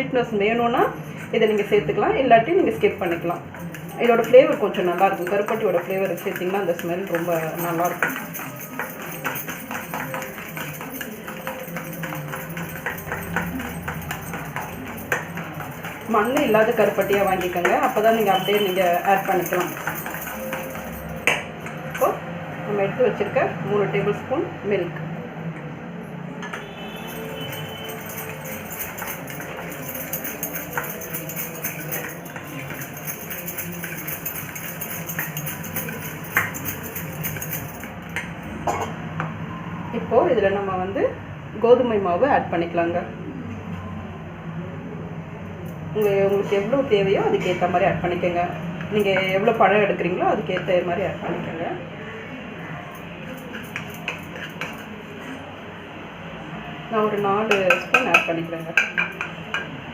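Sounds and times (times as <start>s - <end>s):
music with light percussive beat: 2.8s - 22.3s, 26.3s - 38.8s
spoon scraping and clinking bowl: 3.0s - 22.2s, 26.4s - 38.3s, 53.2s - 55.4s, 57.5s - 59.8s.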